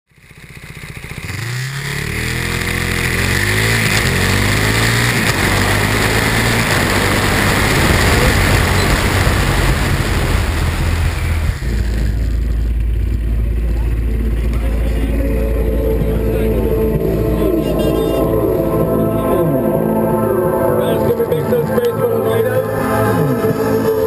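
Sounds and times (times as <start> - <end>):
motorcycle engines accelerating: 0.2 - 24.0.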